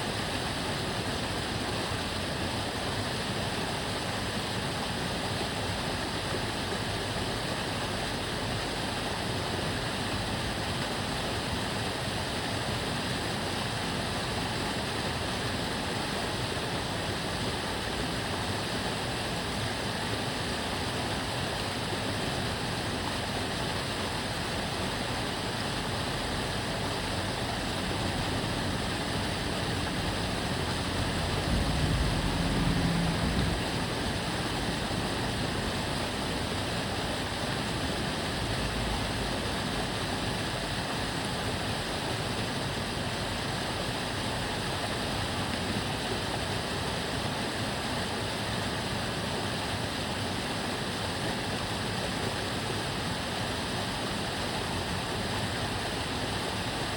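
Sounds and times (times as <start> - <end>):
water babbling in stream: 0.0 - 56.9
vehicle low rumble: 25.8 - 40.8.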